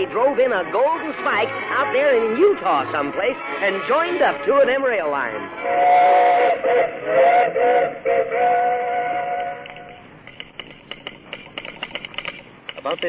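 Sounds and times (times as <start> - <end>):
steam locomotive whistle: 0.0 - 10.0
rapid irregular clicking: 9.6 - 13.0.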